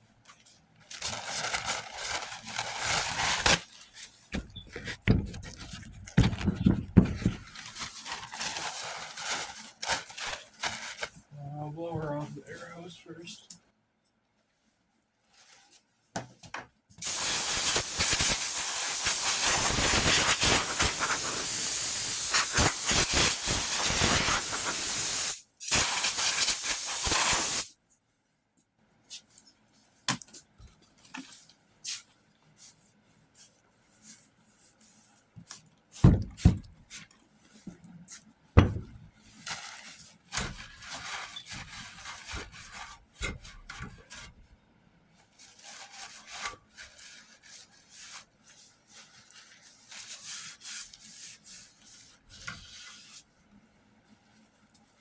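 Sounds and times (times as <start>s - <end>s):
compressed air hissing from blow gun: 17.0s - 27.7s.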